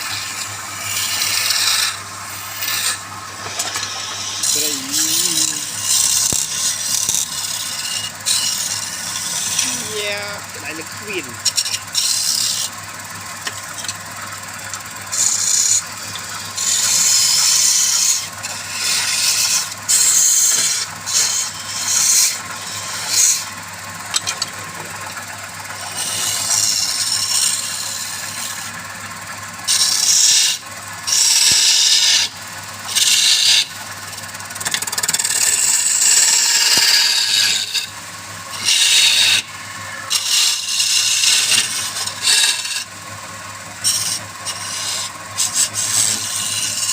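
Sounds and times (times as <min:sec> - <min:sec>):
tool scraping spinning wood: 0:00.0 - 0:46.9
wood lathe humming: 0:00.0 - 0:46.9.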